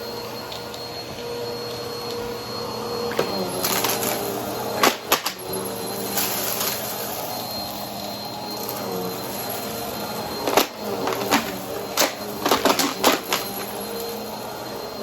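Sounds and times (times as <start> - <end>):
vacuum cleaner running: 0.0 - 15.0.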